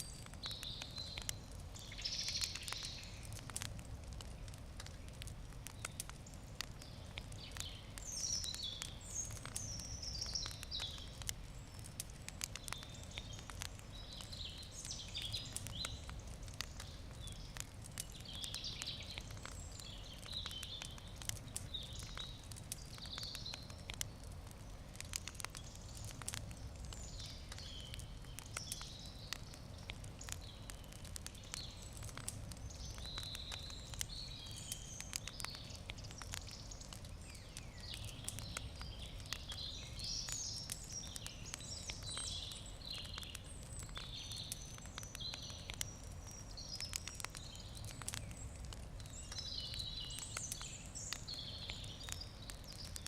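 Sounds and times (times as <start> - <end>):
campfire crackling and popping: 0.0 - 53.0.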